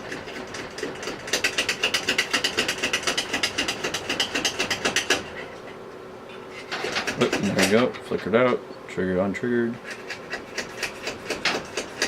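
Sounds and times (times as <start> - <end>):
rapid mechanical clicking: 0.0 - 5.3.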